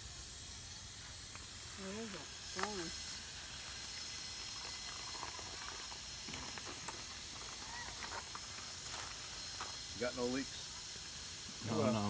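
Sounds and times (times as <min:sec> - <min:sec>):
steady hiss: 0:00.0 - 0:12.0.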